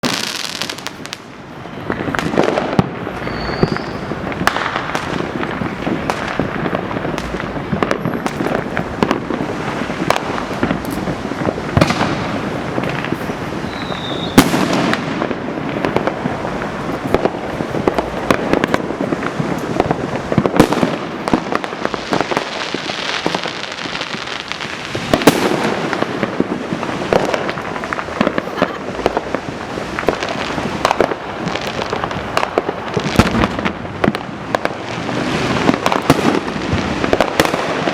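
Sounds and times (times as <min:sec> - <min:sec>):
fireworks booming and crackling: 0:00.0 - 0:37.9
sharp firework bangs: 0:00.0 - 0:37.9.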